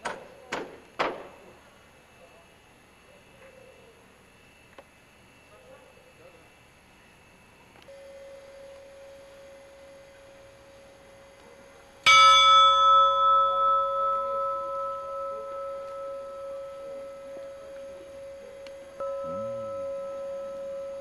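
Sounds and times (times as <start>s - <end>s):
faint steady tone: 1.4s - 21.0s
church bell ringing: 12.0s - 21.0s.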